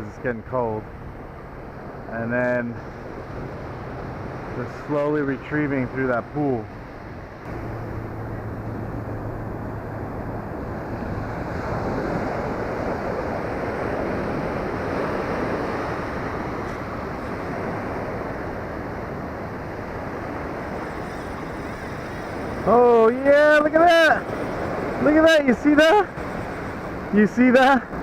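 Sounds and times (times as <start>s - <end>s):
ocean surf breaking: 0.6s - 28.0s
wind buffeting microphone: 5.7s - 28.0s.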